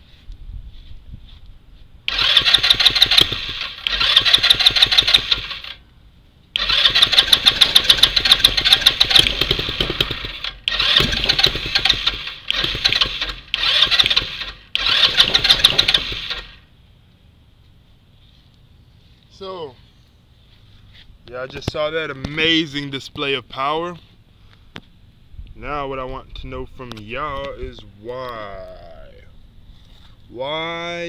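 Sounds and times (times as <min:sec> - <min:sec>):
electric starter cranking engine: 0:02.1 - 0:05.8, 0:06.5 - 0:16.7.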